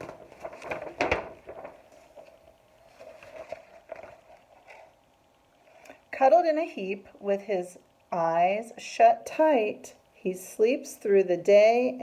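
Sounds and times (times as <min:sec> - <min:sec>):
paper page rustling: 0:00.0 - 0:05.0.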